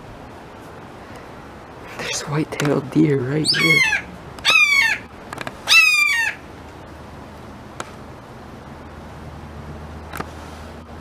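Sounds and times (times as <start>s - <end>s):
low steady background: 0.0s - 11.0s
animal harsh calls: 1.0s - 6.7s.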